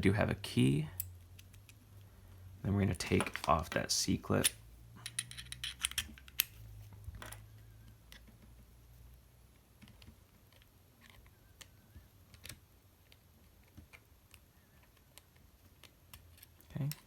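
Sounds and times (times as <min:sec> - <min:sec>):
small metallic clicks and scrapes: 0:04.4 - 0:08.5, 0:09.8 - 0:17.0.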